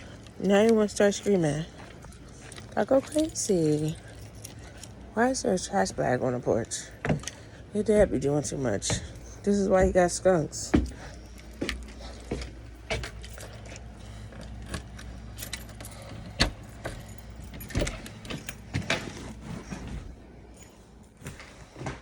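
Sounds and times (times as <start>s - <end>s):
keys jangling: 0.0s - 5.7s, 10.8s - 21.3s
low steady rumble: 0.0s - 21.8s.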